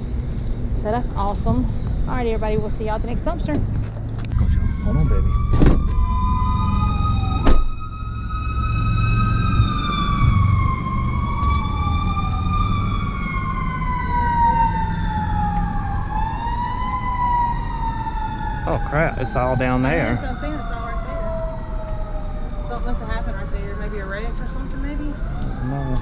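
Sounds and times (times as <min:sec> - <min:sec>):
low vehicle rumble: 0:00.0 - 0:26.0
emergency sirens wailing: 0:04.2 - 0:26.0.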